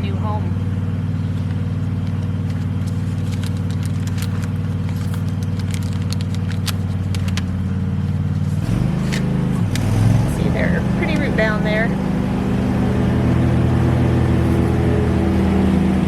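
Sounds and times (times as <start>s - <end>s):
low motor hum: 0.0s - 16.0s
crackling and scraping clicks: 1.5s - 7.6s.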